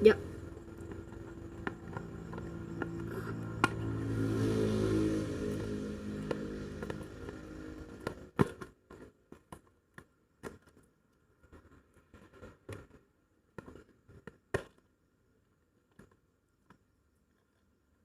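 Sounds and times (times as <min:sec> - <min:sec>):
humming sound: 0:00.0 - 0:08.7.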